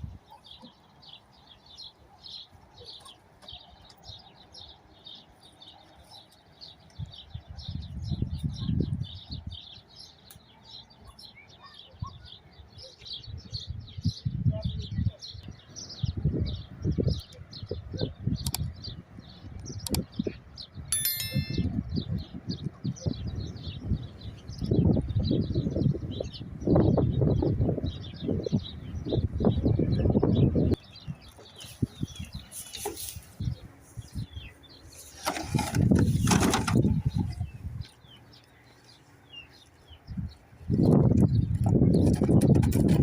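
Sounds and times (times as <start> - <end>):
small birds chirping: 0.0 - 43.0
bright metallic ring: 21.0 - 21.8.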